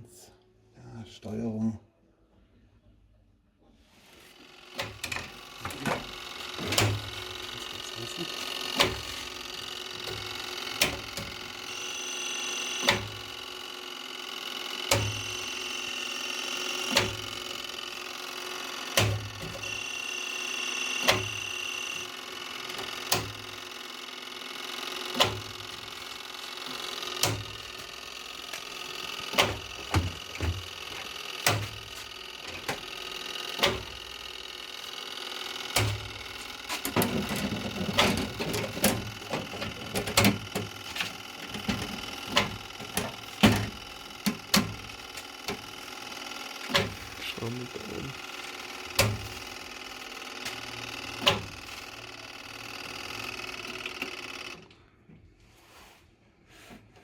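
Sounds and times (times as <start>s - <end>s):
contactor clicking: 4.6s - 54.8s
clatter of clicks and knocks: 4.8s - 7.2s, 36.7s - 45.7s.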